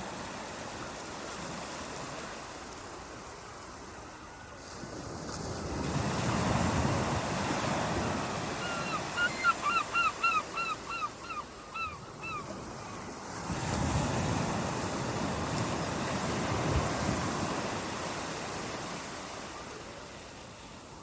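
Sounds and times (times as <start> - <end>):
bird calls: 8.5 - 13.0
sea surf washing in: 12.5 - 21.0.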